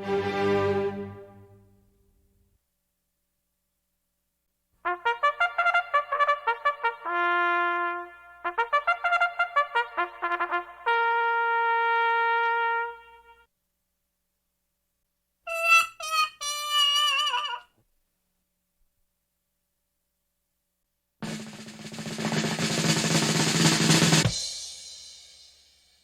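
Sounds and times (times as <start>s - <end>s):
brass fanfare: 4.8s - 13.5s, 15.5s - 17.6s.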